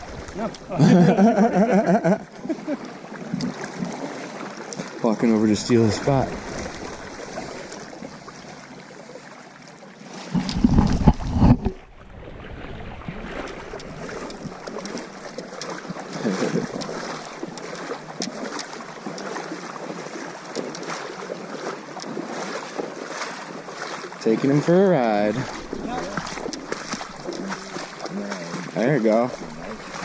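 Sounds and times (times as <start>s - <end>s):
wind buffeting microphone: 0.0s - 0.8s
river water running: 0.0s - 30.0s.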